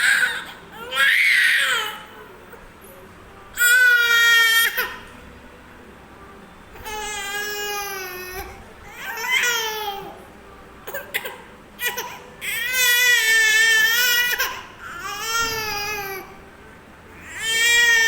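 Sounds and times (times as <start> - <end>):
baby crying: 0.0 - 2.1.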